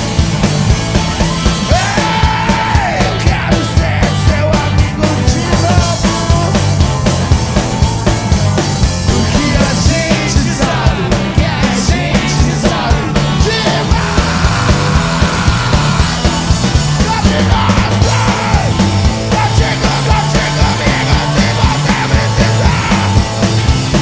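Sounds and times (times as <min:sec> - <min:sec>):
rock band playing: 0:00.0 - 0:24.0
shouted vocal: 0:01.6 - 0:04.5, 0:09.1 - 0:23.3.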